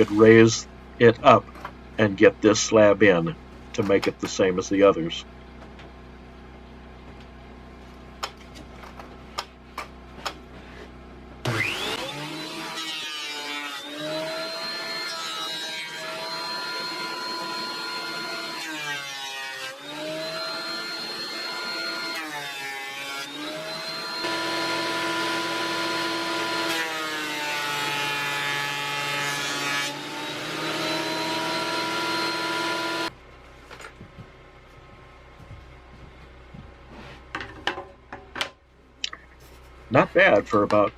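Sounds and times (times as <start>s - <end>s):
thickness planer whining: 10.7s - 33.2s.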